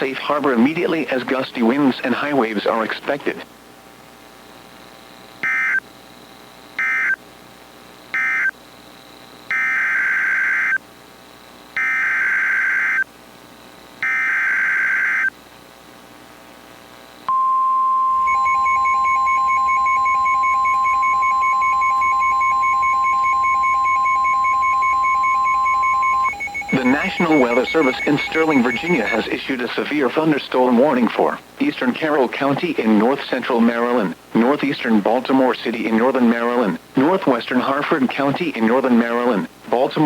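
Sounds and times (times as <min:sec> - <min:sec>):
buzzing data tone bursts: 0:05.4 - 0:05.9, 0:06.7 - 0:07.2, 0:08.1 - 0:08.6, 0:09.5 - 0:10.8, 0:11.8 - 0:13.1, 0:14.0 - 0:15.3, 0:17.3 - 0:30.2
steady warning alarm tone: 0:06.8 - 0:07.2, 0:14.0 - 0:15.3, 0:17.3 - 0:30.3
faint pulsing tone: 0:17.3 - 0:29.4.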